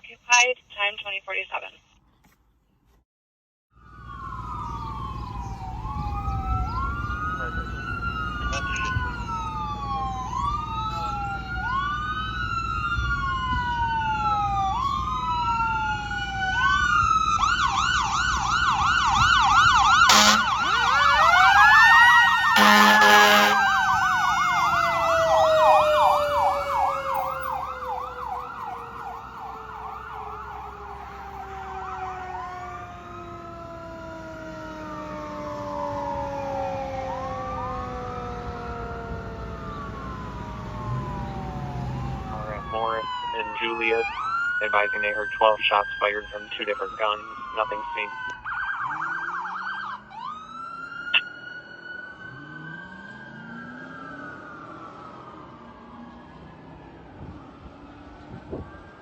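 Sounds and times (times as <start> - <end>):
deeper siren tone: 3.7 - 59.0
fire engine electronic siren: 3.7 - 59.0
air horn blasts: 20.1 - 20.7, 22.5 - 23.7.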